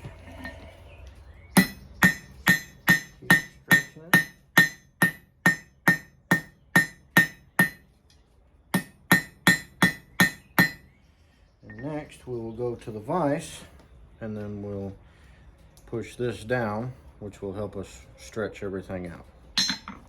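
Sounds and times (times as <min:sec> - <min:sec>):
hammer ringing on anvil: 0:01.6 - 0:07.8, 0:08.7 - 0:10.9, 0:19.6 - 0:20.0.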